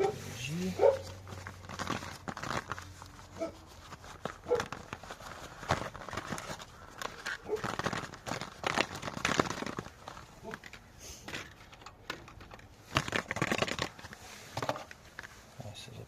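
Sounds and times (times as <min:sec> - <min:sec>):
packaging crinkling and rustling: 0:00.0 - 0:16.0
small clicks and knocks: 0:07.0 - 0:15.3.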